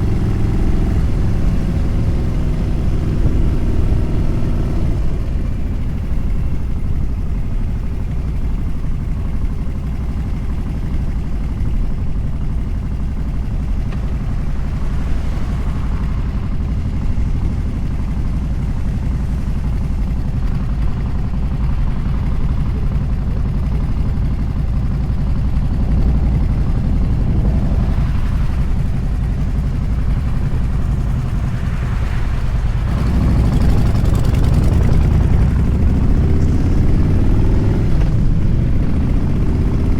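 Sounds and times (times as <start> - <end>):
motorcycle engine running: 0.0 - 39.9
wind rushing over microphone: 25.6 - 39.9.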